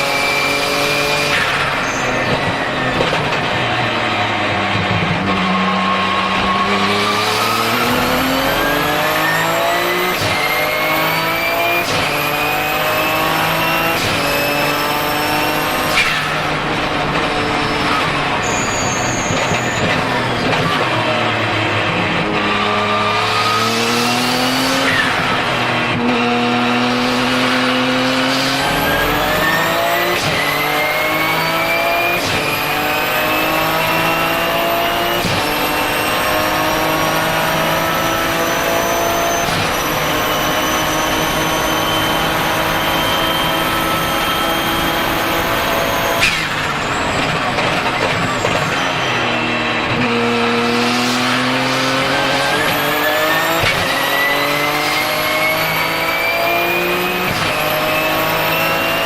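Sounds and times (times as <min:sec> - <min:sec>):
race car engine upshifting: 0:00.0 - 0:59.0
high turbo whistle: 0:05.6 - 0:16.2, 0:17.6 - 0:20.0, 0:28.4 - 0:34.2, 0:38.4 - 0:47.2.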